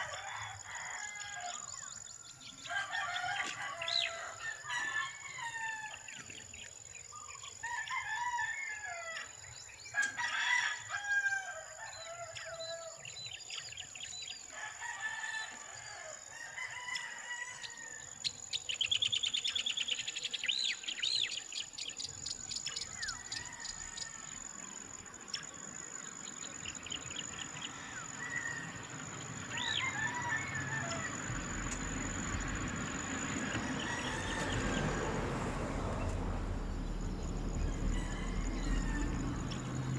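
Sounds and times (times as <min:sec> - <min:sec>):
roosters crowing: 0:00.0 - 0:06.4, 0:07.2 - 0:13.2, 0:14.5 - 0:18.8, 0:22.7 - 0:25.4, 0:26.4 - 0:39.9
small birds chirping: 0:18.2 - 0:23.7
low rushing noise: 0:30.4 - 0:39.9.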